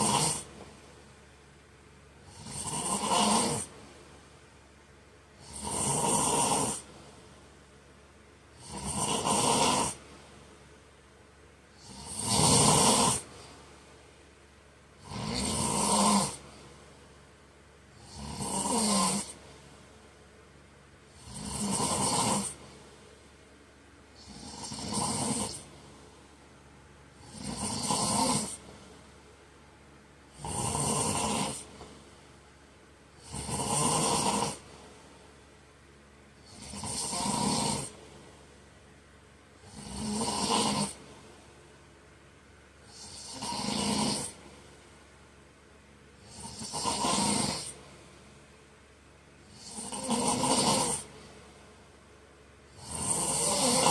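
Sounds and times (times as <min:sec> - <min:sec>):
man snoring: 0:00.0 - 0:00.6, 0:02.2 - 0:03.8, 0:05.4 - 0:07.0, 0:08.5 - 0:10.1, 0:11.7 - 0:13.5, 0:15.0 - 0:16.6, 0:17.9 - 0:19.4, 0:21.1 - 0:22.8, 0:24.2 - 0:25.9, 0:27.2 - 0:28.8, 0:30.3 - 0:31.9, 0:33.1 - 0:34.8, 0:36.4 - 0:38.0, 0:39.6 - 0:41.1, 0:42.9 - 0:44.6, 0:46.2 - 0:47.9, 0:49.4 - 0:51.4, 0:52.7 - 0:53.9.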